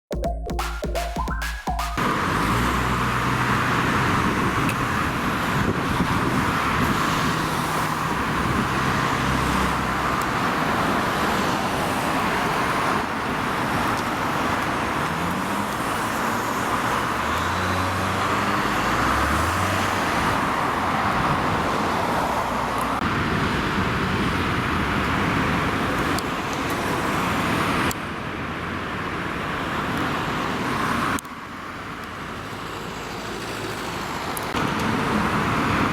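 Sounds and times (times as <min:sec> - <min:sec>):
road traffic noise: 0:01.5 - 0:35.9
vehicle engine revving: 0:02.0 - 0:10.2.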